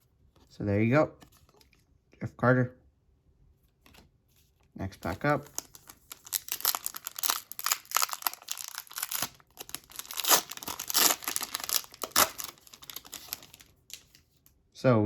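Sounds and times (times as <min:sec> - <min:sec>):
foil wrapper tearing and crinkling: 0:05.4 - 0:14.2.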